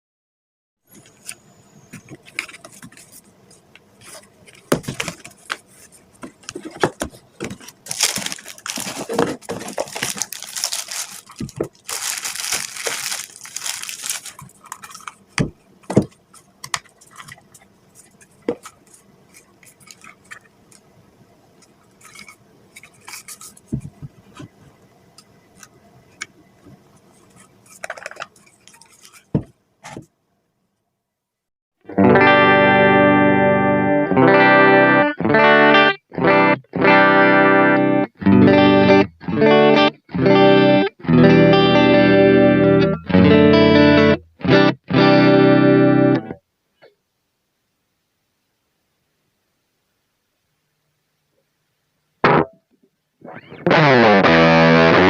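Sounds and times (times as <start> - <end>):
box handling clicks and knocks: 3.8 - 18.8
packaging rustling and tearing: 4.0 - 15.4, 22.0 - 24.0, 27.2 - 29.3.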